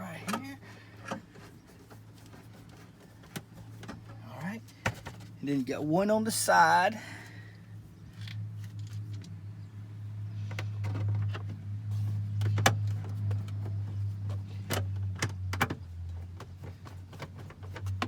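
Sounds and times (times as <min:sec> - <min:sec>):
clicks and rattles of handled tools: 0:08.1 - 0:09.4.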